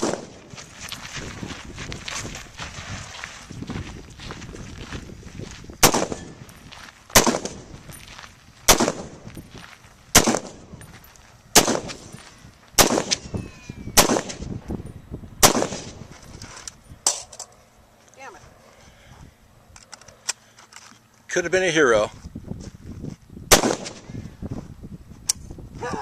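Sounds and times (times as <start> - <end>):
rifle shots: 0.0 - 0.4, 5.8 - 6.3, 7.2 - 7.7, 8.7 - 9.2, 10.1 - 10.7, 11.6 - 12.1, 12.8 - 13.3, 14.0 - 14.5, 15.4 - 16.0, 23.5 - 24.1.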